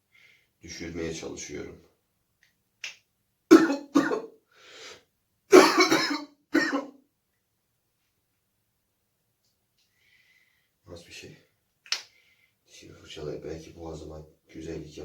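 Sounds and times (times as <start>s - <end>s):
man coughing: 3.5s - 4.3s, 5.5s - 6.9s.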